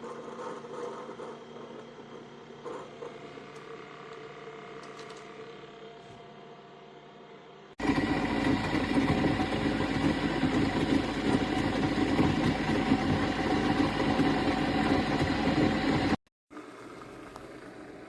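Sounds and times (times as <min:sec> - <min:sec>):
coffee maker pump humming: 0:07.8 - 0:18.0.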